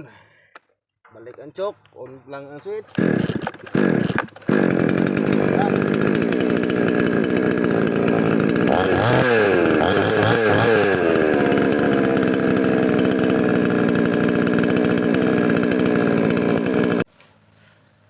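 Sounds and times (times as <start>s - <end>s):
chainsaw revving and running: 2.9s - 17.1s.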